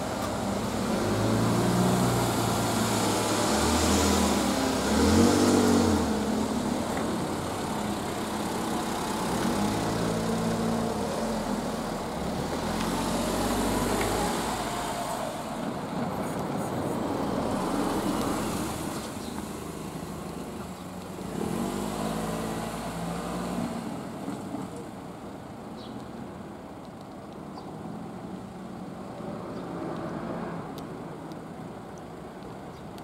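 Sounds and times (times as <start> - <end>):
vehicle engines passing: 0.0 - 33.0.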